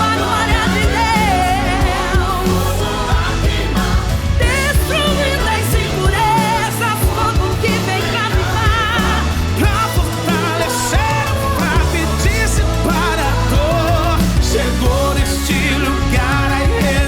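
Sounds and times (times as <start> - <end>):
bass line and drums: 0.0 - 17.0
person singing with vibrato: 0.0 - 17.0.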